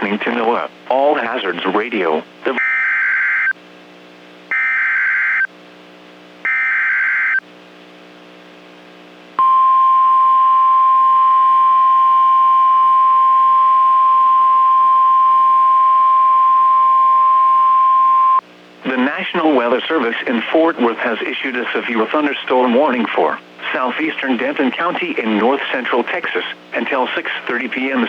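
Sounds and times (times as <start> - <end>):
loud steady alarm tone: 2.6 - 3.6, 4.5 - 5.5, 6.5 - 7.4.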